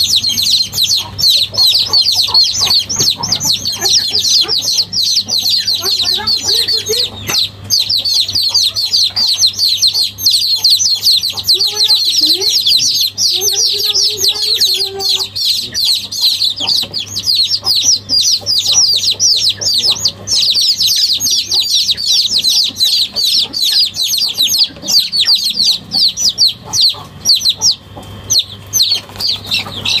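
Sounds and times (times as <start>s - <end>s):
chorus of bird chirps: 0.0s - 30.0s
faint low hum: 0.0s - 30.0s.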